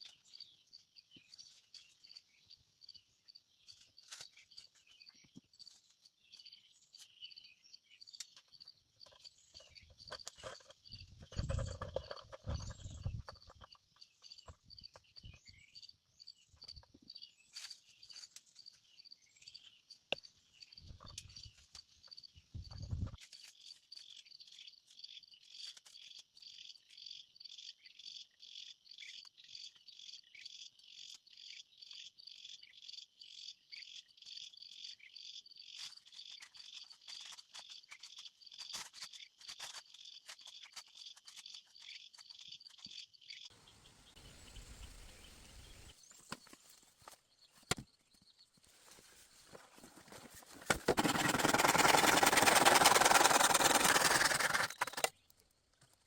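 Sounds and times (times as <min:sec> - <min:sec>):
insect chirping: 0:18.0 - 0:46.3.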